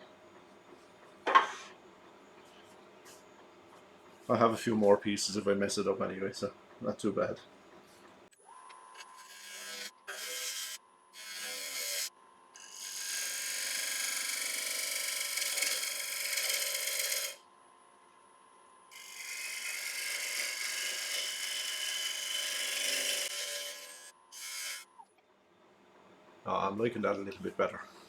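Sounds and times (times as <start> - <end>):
lathe tool cutting wood: 9.2 - 17.4, 18.9 - 24.8.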